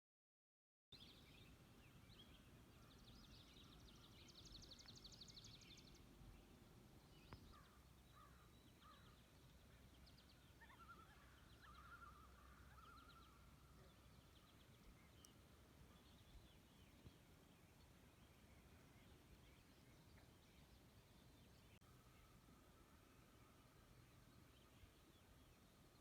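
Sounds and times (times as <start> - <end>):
songbirds singing: 1.0 - 26.0.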